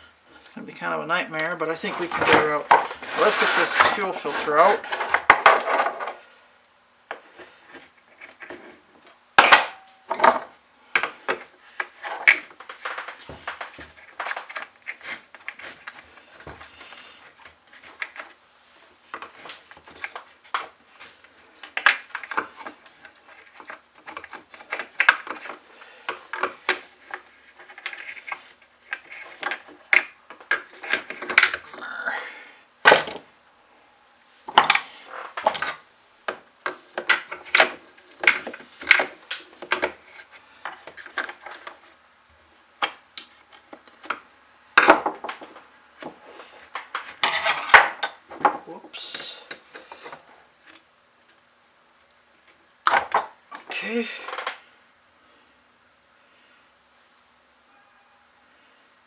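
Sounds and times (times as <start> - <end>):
metal tools clicking and scraping: 1.8 - 6.2, 47.2 - 48.2.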